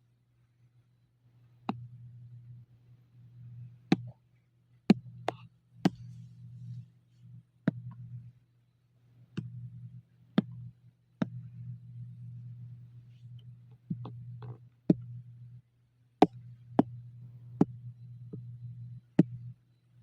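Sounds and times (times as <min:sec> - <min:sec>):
low hum: 0:09.2 - 0:15.7, 0:16.4 - 0:19.9.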